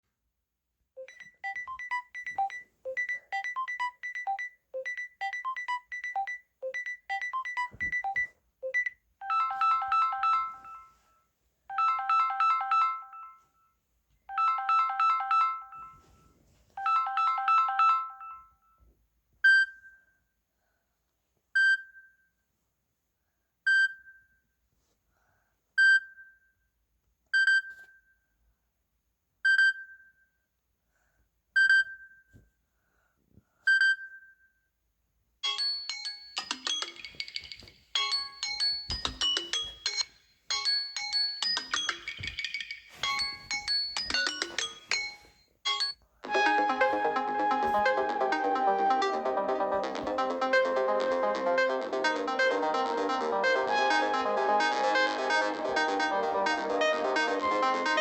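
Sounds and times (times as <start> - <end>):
bright phone pings: 1.0 - 11.0, 14.3 - 16.1, 16.8 - 18.4, 35.4 - 47.0
electronic ringtone melody: 1.0 - 11.0, 11.7 - 13.4, 14.3 - 16.1, 16.8 - 18.4, 35.5 - 58.0.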